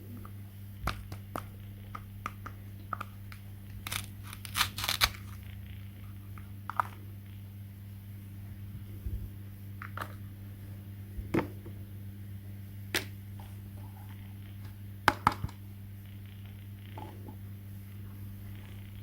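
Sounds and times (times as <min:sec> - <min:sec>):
steady low hum: 0:00.0 - 0:19.0
clicks and taps of small objects: 0:00.8 - 0:03.4.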